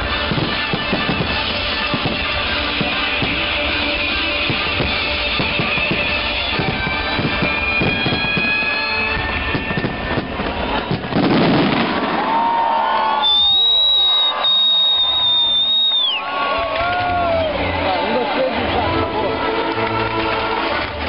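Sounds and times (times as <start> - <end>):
music playing: 0.0 - 11.8, 16.2 - 21.0
high whistling fireworks: 0.0 - 17.6
fireworks bursting and crackling: 0.0 - 17.7.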